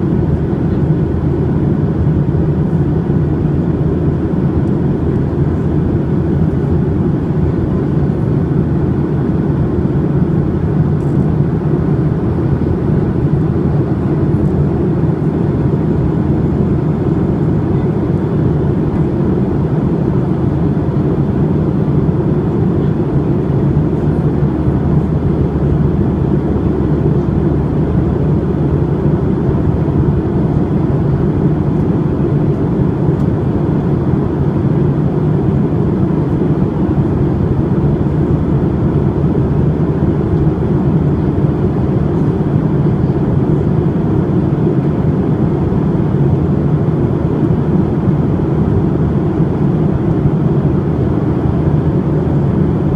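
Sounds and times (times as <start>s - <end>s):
jet engines droning: 0.0s - 52.9s.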